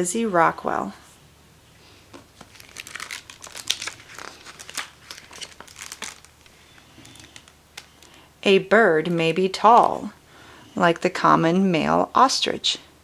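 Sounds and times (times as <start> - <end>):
book pages rustling: 1.8 - 8.3.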